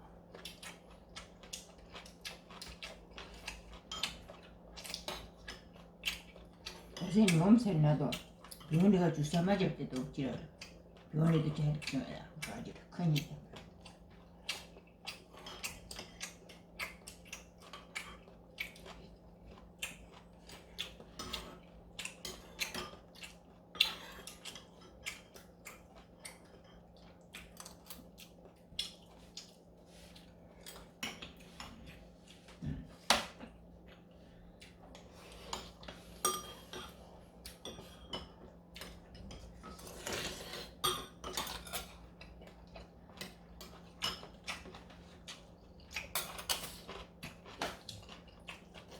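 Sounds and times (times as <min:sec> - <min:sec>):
faint steady hum: 0:00.0 - 0:48.9
cutlery clinking on dishes: 0:35.5 - 0:38.4.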